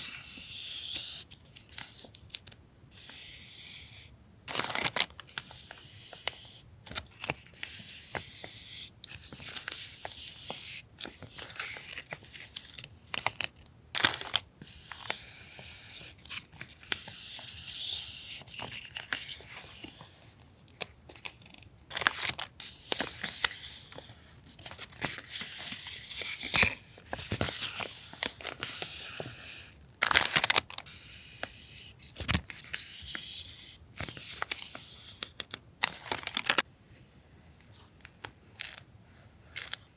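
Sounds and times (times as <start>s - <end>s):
plastic and paper crinkling: 4.5s - 7.4s, 21.1s - 29.4s, 30.0s - 30.9s, 34.0s - 36.6s.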